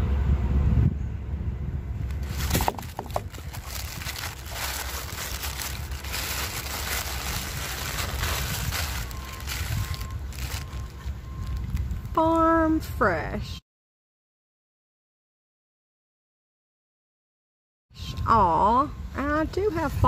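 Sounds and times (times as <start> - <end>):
low handling rumble: 0.0 - 12.2
packaging rustling and crinkling: 2.1 - 12.2.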